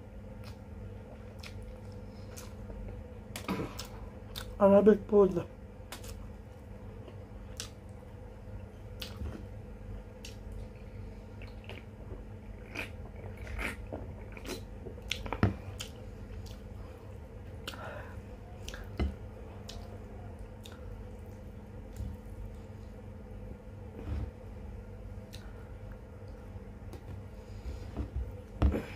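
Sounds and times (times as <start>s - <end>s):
low electrical hum: 0.0s - 28.9s
person chewing food: 0.3s - 4.6s, 6.9s - 8.0s, 8.6s - 23.0s, 25.1s - 28.9s
small mouth clicks and smacks: 0.4s - 0.6s, 1.3s - 2.6s, 7.5s - 7.8s.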